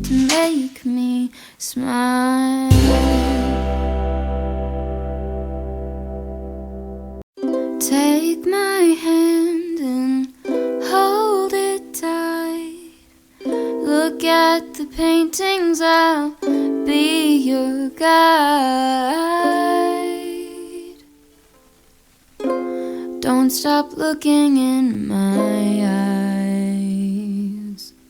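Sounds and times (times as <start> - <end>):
person singing: 0.0 - 1.2, 1.8 - 6.1, 7.8 - 21.1, 23.0 - 28.0
plucked strings accompaniment: 2.7 - 8.8.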